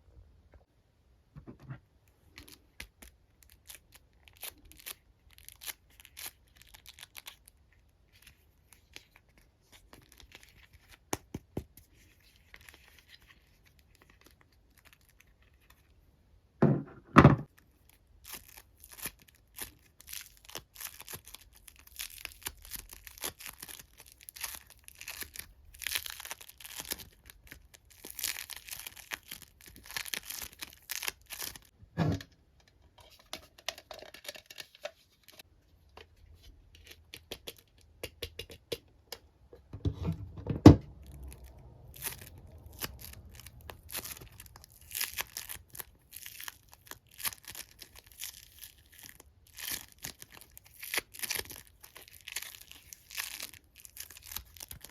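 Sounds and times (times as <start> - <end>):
plastic crinkling: 17.4 - 31.7, 40.9 - 54.9.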